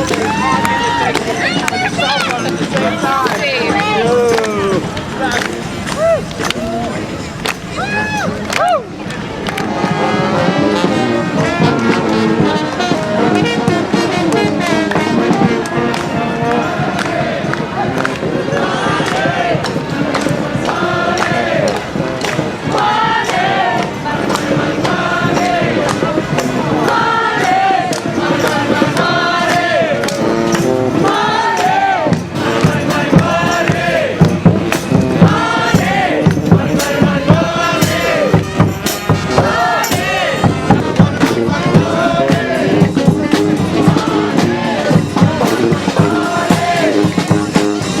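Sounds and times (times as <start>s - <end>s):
brass band horns playing: 0.0s - 7.5s, 8.2s - 48.0s
drum hits: 31.1s - 48.0s.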